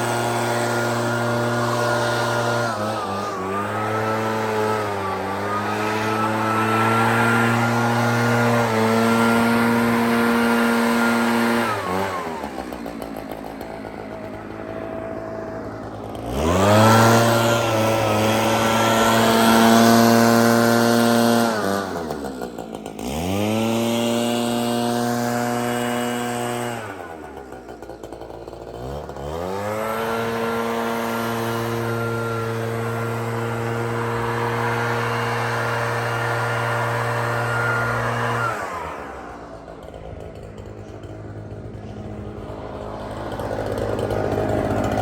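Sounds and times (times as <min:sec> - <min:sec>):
backpack blower engine revving: 0:00.0 - 0:45.0.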